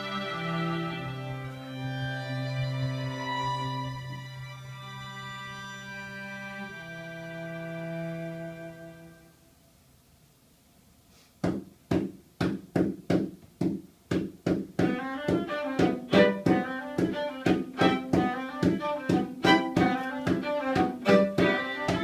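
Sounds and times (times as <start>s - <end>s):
sustained string notes: 0.0s - 9.4s, 14.8s - 22.0s
percussive string strokes: 14.1s - 22.0s.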